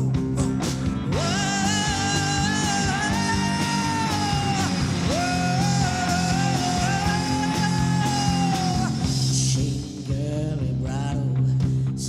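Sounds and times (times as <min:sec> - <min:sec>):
rock band playing: 0:00.0 - 0:12.0
singer holding long notes: 0:01.1 - 0:10.6.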